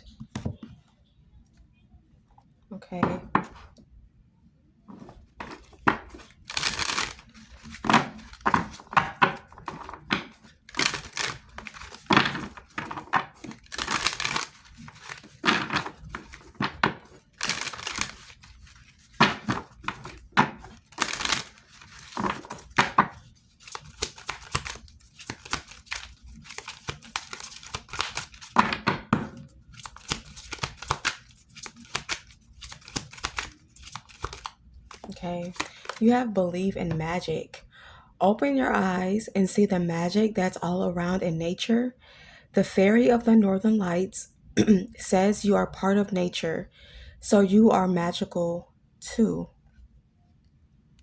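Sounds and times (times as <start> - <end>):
cards shuffling: 4.9 - 36.1.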